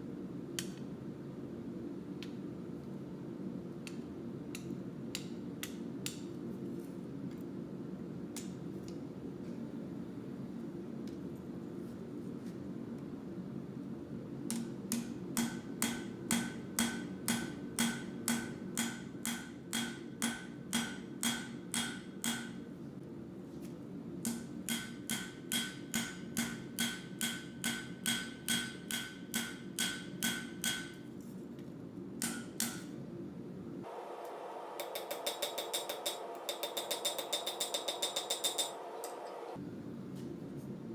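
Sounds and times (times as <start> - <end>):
steady low hum: 0.0 - 40.9
hammer striking steel on anvil: 14.5 - 22.6, 24.2 - 31.0, 32.2 - 32.9, 34.2 - 39.5.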